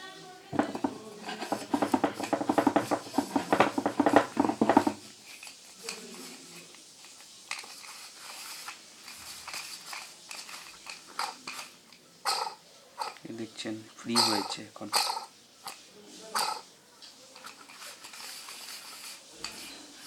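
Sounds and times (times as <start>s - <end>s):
metal fan parts rubbing and clinking: 0.5s - 20.0s
parts clicking when handled: 6.6s - 13.3s.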